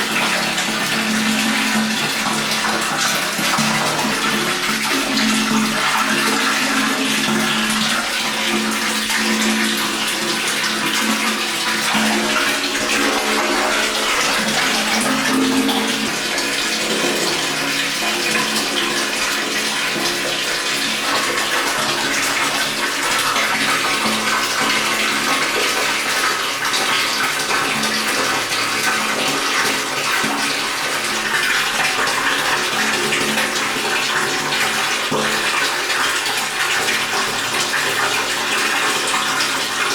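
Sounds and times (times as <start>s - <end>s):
water rushing into tank: 0.0s - 39.9s
low hollow wavering tones: 11.0s - 18.2s.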